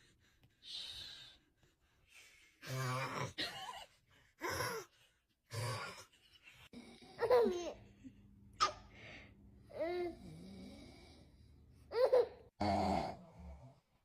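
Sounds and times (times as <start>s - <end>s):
baby laughing: 7.2s - 8.0s, 11.9s - 12.5s
man snoring: 10.2s - 11.3s, 12.6s - 13.8s.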